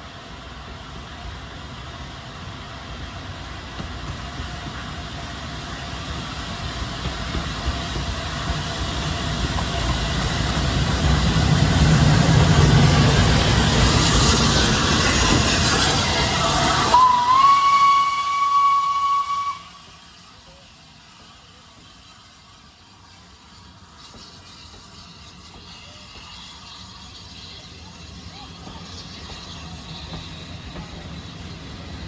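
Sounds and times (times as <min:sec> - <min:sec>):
steam train rumble and hiss: 0:00.0 - 0:32.0
steam whistle: 0:16.4 - 0:20.0.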